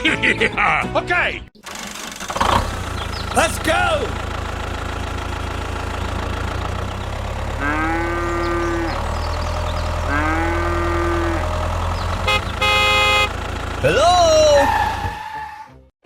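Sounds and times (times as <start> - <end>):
low engine hum: 2.4 - 14.3
cow mooing: 7.6 - 9.1, 10.0 - 11.5
short buzzy tone: 12.3 - 13.3.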